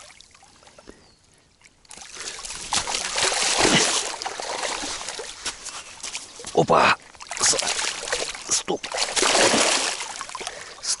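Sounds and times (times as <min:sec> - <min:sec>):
fish splashing in water: 0:01.9 - 0:05.4, 0:07.2 - 0:10.7.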